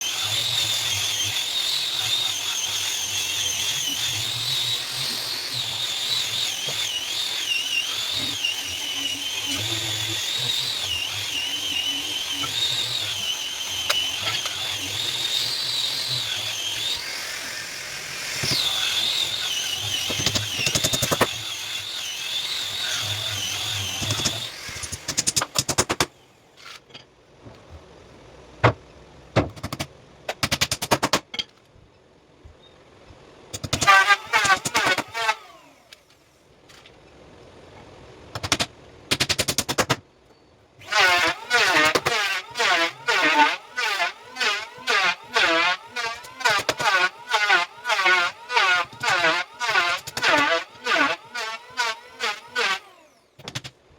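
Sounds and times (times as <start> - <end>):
power tool whining: 0.0 - 26.3, 33.7 - 36.2, 40.8 - 53.4.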